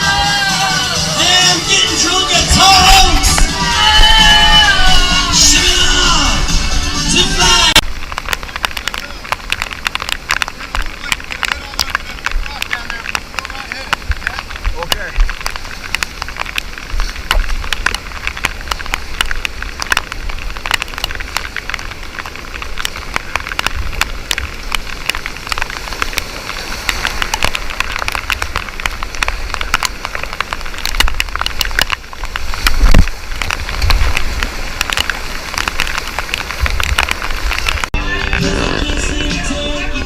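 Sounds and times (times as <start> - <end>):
whitewater rapids rushing: 0.0 - 40.0.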